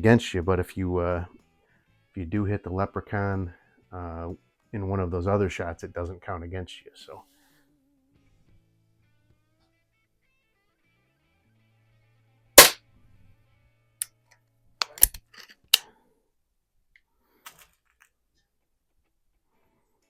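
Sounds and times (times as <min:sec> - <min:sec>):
air pistol firing crack: 0:12.6 - 0:12.8.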